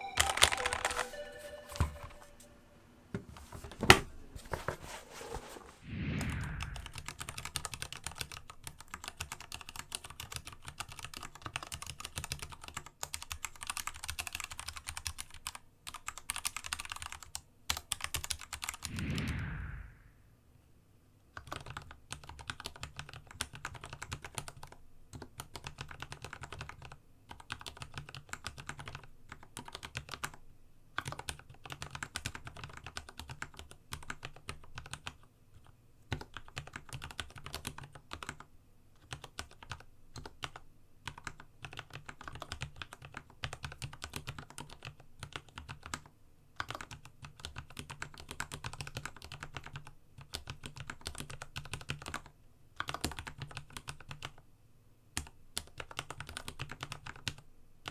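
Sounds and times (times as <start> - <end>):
fast mechanical keyboard typing: 0.0 - 1.8, 6.9 - 18.8, 21.4 - 30.4, 31.0 - 54.4, 55.2 - 57.9.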